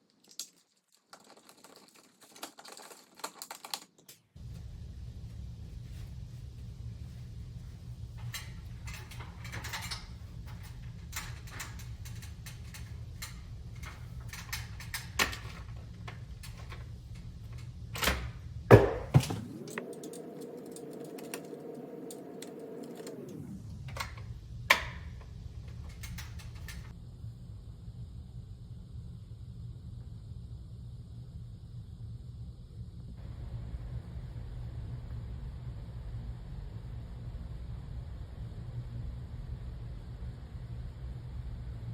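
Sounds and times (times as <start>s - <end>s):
steady pitched hum: 4.4s - 29.9s
sharp knocks: 18.7s - 19.7s.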